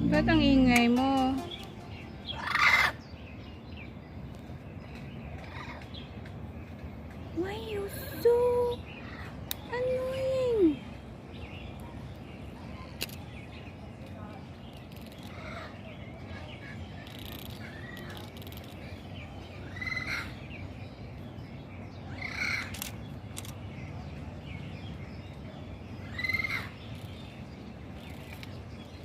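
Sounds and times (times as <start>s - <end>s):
parrot squawking: 1.5s - 3.0s.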